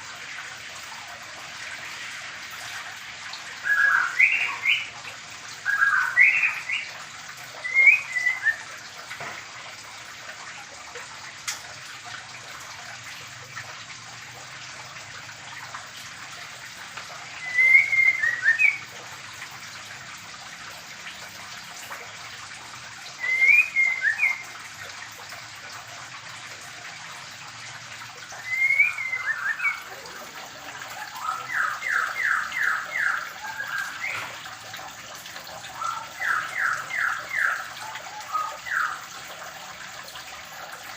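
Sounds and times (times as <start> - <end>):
bird whistled calls: 3.6 - 5.0, 5.6 - 7.0, 7.6 - 8.7, 17.4 - 18.9, 23.2 - 24.5, 28.4 - 34.4, 35.7 - 39.0.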